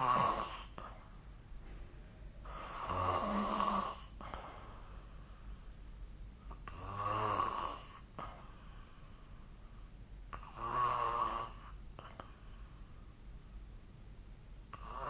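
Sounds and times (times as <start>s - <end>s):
person snoring: 0.0s - 1.0s, 2.4s - 4.7s, 6.6s - 8.4s, 10.4s - 12.3s, 14.7s - 15.0s.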